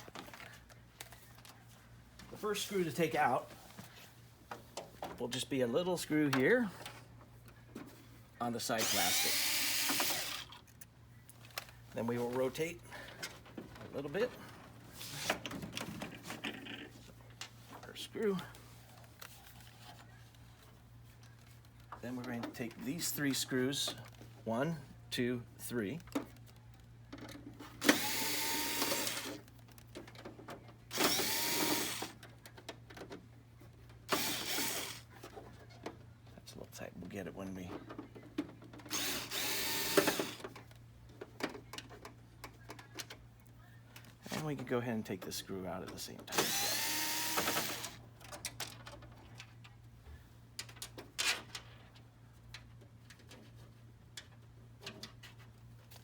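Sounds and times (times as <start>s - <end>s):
power screwdriver whining: 8.8s - 10.6s, 27.8s - 29.4s, 30.9s - 32.2s, 34.1s - 35.1s, 38.9s - 40.4s, 46.3s - 48.0s
plastic parts clicking and knocking: 26.0s - 36.1s, 37.6s - 43.3s, 45.9s - 49.8s, 50.6s - 55.6s.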